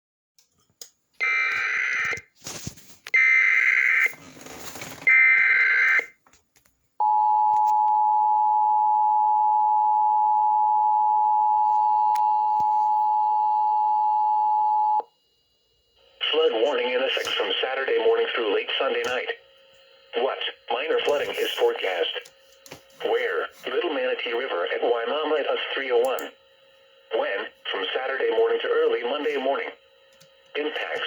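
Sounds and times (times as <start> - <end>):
static: 16.0 - 26.4, 27.1 - 31.0.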